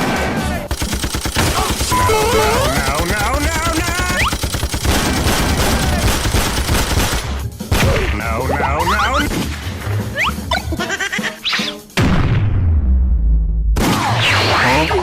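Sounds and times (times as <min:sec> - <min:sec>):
machine-gun fire: 0:00.7 - 0:08.2
stepped electronic tones: 0:01.9 - 0:03.0, 0:08.5 - 0:09.3.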